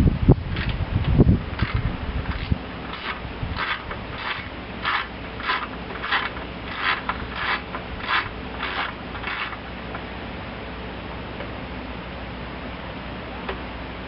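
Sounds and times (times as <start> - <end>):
ratchet wrench rasping: 1.6 - 9.6.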